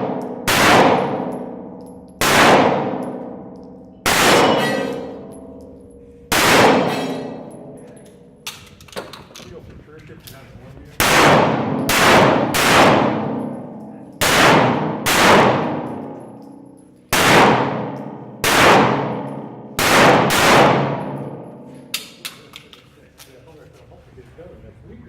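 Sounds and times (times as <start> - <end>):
pistol shots: 0.0 - 5.5, 6.3 - 7.7, 11.0 - 16.2, 17.1 - 21.4
metallic ringing: 3.0 - 8.5.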